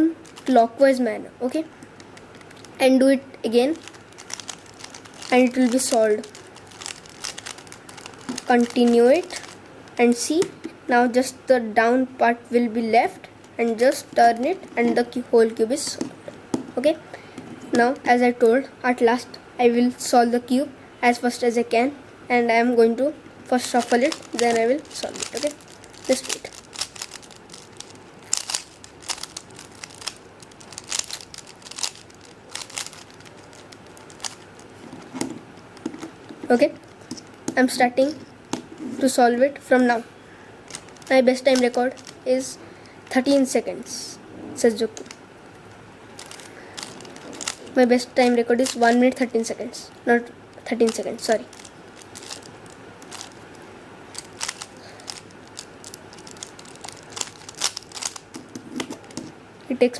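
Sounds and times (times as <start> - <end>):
puzzle cube twisting clicks: 0.2 - 0.6, 1.8 - 2.9, 3.6 - 10.8, 23.5 - 38.7, 40.7 - 42.5, 44.8 - 45.2, 46.2 - 49.2, 50.6 - 59.3.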